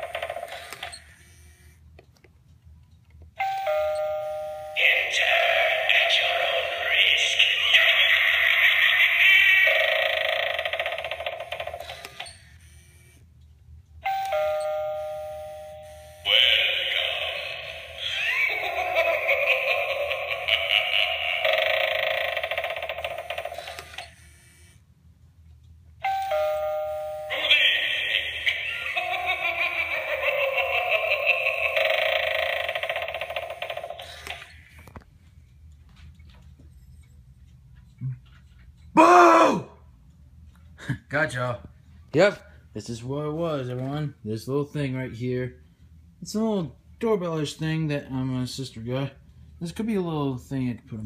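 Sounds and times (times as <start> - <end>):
doorbell chime: 3.4 - 5.1, 14.0 - 16.2, 26.0 - 27.5
spooky electronic sound: 3.6 - 11.1, 14.9 - 23.6, 26.2 - 34.6.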